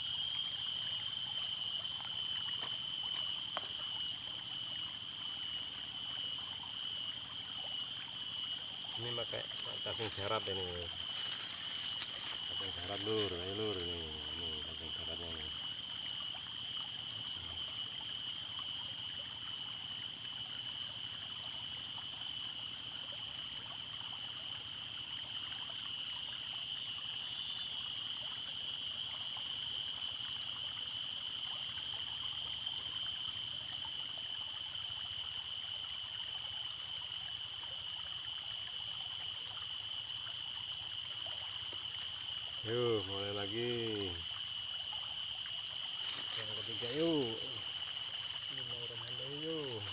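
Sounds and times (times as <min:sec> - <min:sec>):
insects droning: 0:00.0 - 0:49.9
stream running: 0:00.0 - 0:49.9.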